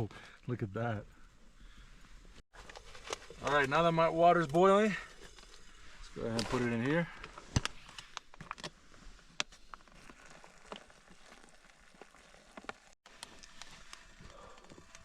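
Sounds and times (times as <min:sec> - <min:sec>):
water pouring patter: 0:02.6 - 0:08.6, 0:09.4 - 0:15.0
foil pouch clicks and crinkles: 0:07.4 - 0:08.8, 0:09.4 - 0:15.0.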